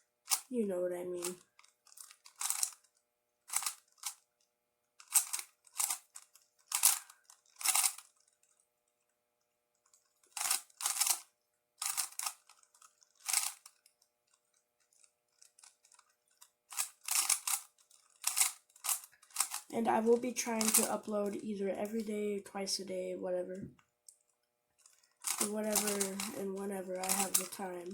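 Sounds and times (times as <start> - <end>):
plastic puzzle cube clacking turns: 0.3 - 0.5, 1.2 - 4.2, 5.0 - 8.6, 9.8 - 21.4, 24.8 - 27.8.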